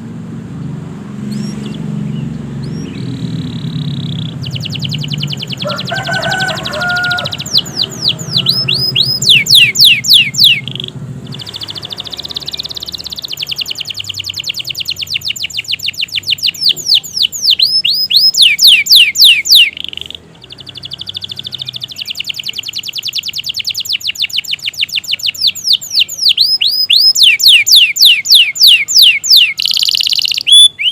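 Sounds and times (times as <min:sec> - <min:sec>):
canary singing trills and whistles: 0:01.2 - 0:30.9.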